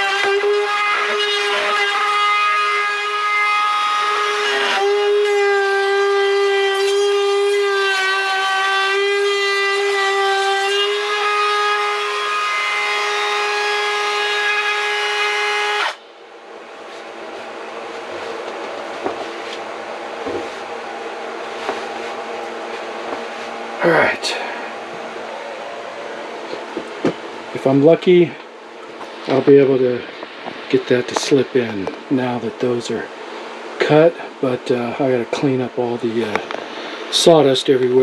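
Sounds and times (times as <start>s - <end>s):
power tool cutting wood: 0.0s - 16.0s, 16.9s - 27.3s
quiet hum: 15.6s - 38.0s.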